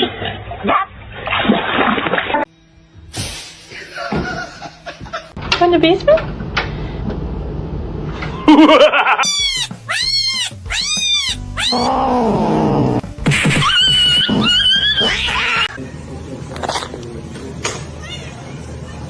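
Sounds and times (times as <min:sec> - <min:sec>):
cat meowing: 0:09.2 - 0:13.0
cat yowling: 0:09.2 - 0:13.0, 0:13.7 - 0:15.8.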